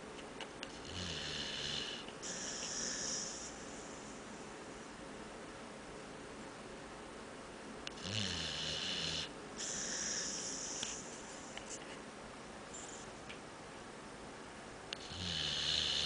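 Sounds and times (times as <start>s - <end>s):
dog snoring: 0.7s - 4.0s, 7.9s - 11.1s, 15.0s - 16.0s
dog breathing: 1.4s - 4.4s, 9.6s - 11.6s.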